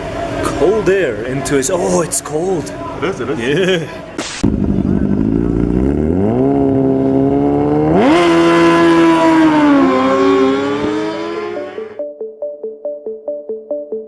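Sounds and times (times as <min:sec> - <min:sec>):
race car engine accelerating: 0:04.4 - 0:12.0.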